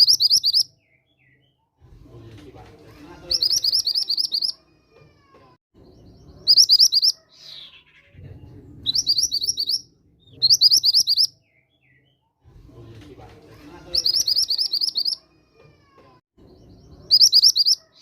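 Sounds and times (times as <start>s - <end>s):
fast high bird chirping: 0.0s - 0.7s, 3.3s - 4.6s, 6.0s - 8.1s, 8.8s - 11.3s, 13.9s - 15.2s, 16.6s - 18.0s.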